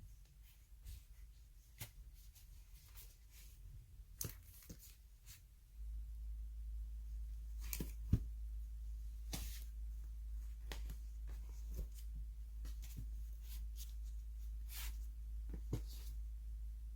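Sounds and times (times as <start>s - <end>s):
books rustling and tapping: 4.2s - 5.0s, 7.5s - 8.4s, 9.1s - 16.2s
steady low hum: 4.9s - 16.9s.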